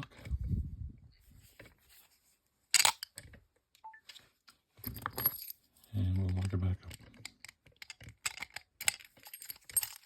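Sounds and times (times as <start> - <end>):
small metal clicks and rattles: 6.1 - 10.0.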